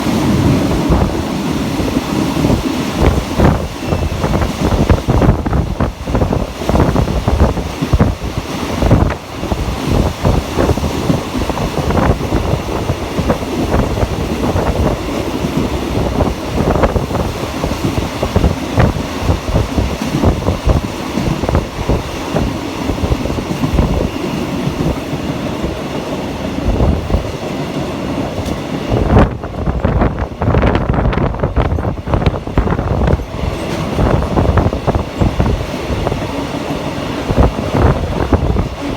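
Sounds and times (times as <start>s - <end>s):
train rumbling on rails: 0.0s - 38.9s.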